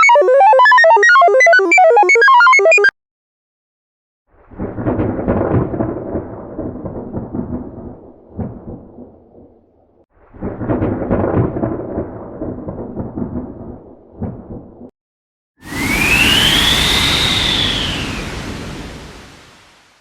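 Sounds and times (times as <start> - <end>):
rolling thunder rumbles: 4.4 - 14.9, 15.6 - 19.8.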